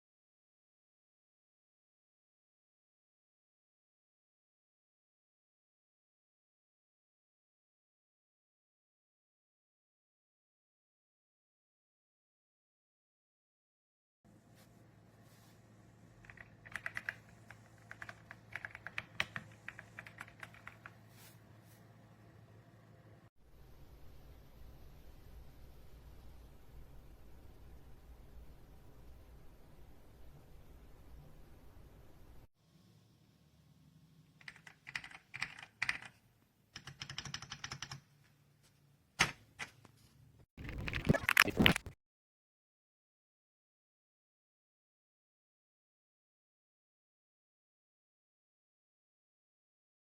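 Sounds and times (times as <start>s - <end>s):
mechanical keyboard typing: 16.2s - 21.0s, 34.4s - 36.2s, 36.8s - 38.0s.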